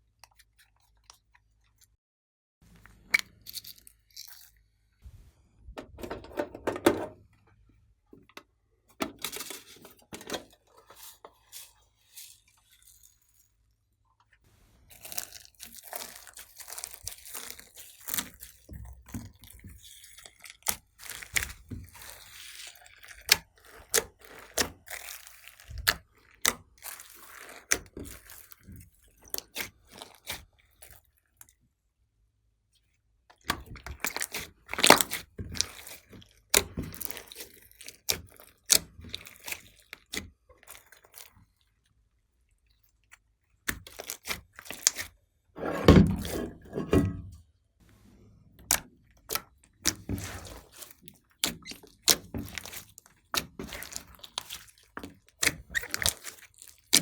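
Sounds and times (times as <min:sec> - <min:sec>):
slime sticky crackles and pops: 0:14.9 - 0:18.6.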